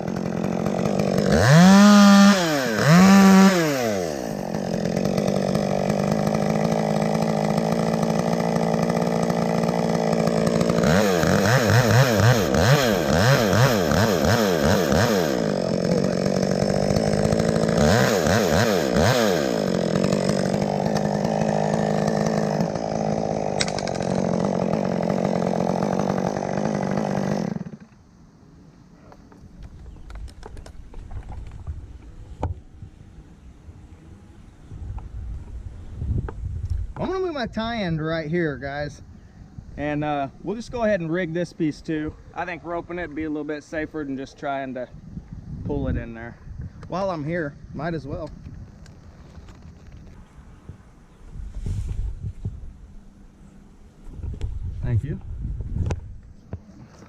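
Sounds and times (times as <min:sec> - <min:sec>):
chainsaw cutting wood: 0:00.0 - 0:28.1.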